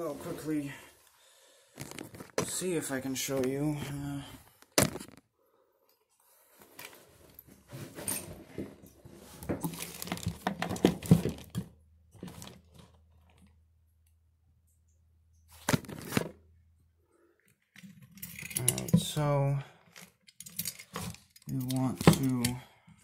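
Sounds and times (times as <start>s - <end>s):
rustling and scraping of parts: 0.0s - 2.6s, 6.1s - 13.6s, 15.5s - 16.4s, 17.4s - 23.0s.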